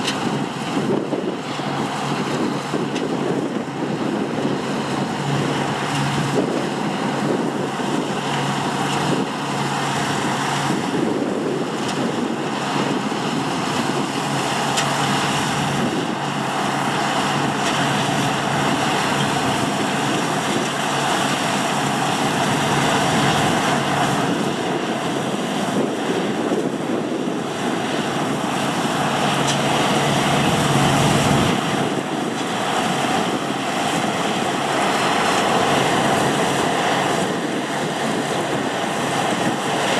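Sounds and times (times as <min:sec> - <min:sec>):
heavy farm machinery humming: 0:00.0 - 0:39.9
wind buffeting microphone: 0:00.0 - 0:39.9.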